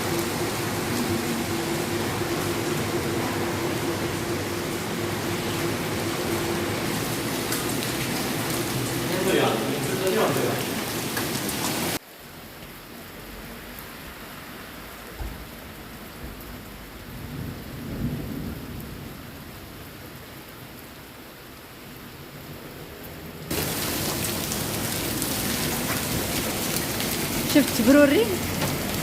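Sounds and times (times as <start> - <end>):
thunder rumble: 0.0 - 10.5, 15.2 - 20.0
heavy rain: 0.0 - 29.0.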